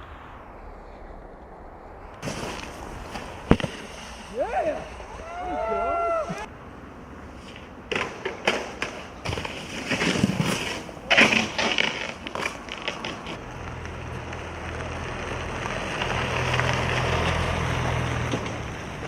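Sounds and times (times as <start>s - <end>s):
low steady hum: 0.0s - 6.5s
snowboard scraping: 0.0s - 6.5s, 8.7s - 13.5s.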